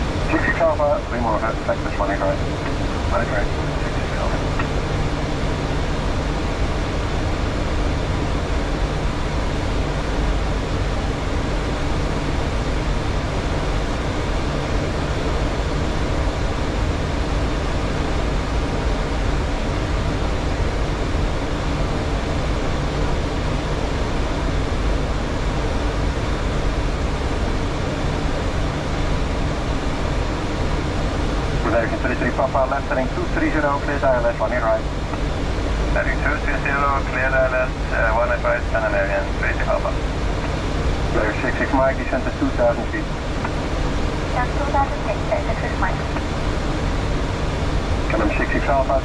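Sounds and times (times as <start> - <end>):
air-conditioning hiss: 0.0 - 49.0
low hum: 0.0 - 49.0.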